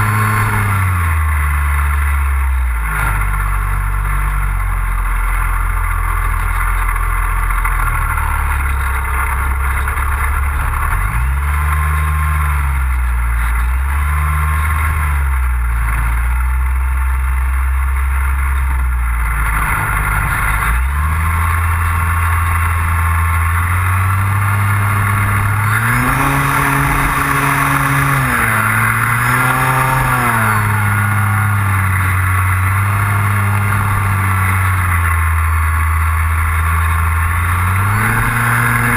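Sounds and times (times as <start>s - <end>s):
model airplane engine in flight: 21.5s - 38.9s.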